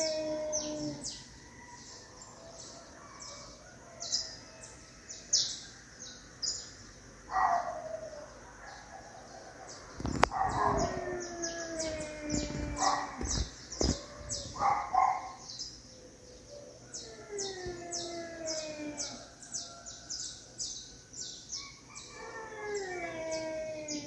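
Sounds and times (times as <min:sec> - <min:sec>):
cats yowling in a fight: 0:00.0 - 0:01.2, 0:10.2 - 0:15.4, 0:17.0 - 0:19.4, 0:22.1 - 0:24.0.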